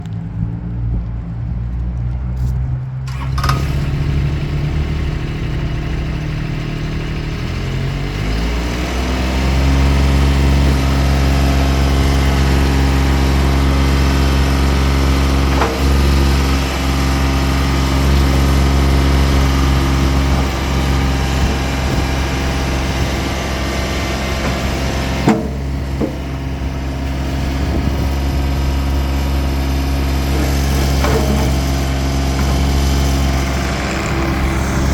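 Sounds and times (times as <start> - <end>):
skid steer engine running: 3.1 - 34.9
single knocks: 24.4 - 26.6.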